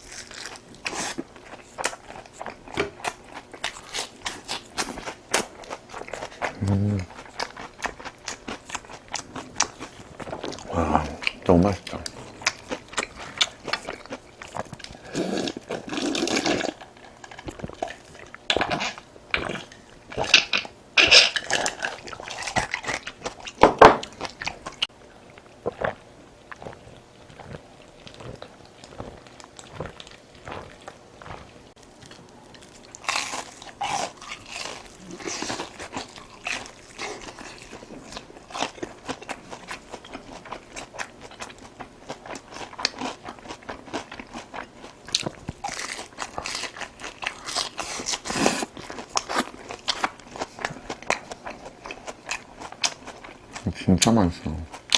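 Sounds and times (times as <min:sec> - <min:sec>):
chewing and crunching food: 0:00.0 - 0:54.9.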